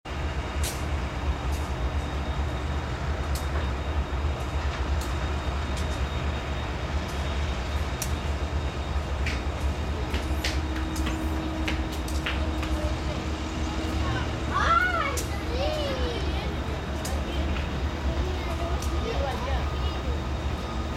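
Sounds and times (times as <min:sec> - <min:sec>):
freight train rumbling past: 0:00.1 - 0:20.9
train wheel clicks: 0:09.2 - 0:13.1.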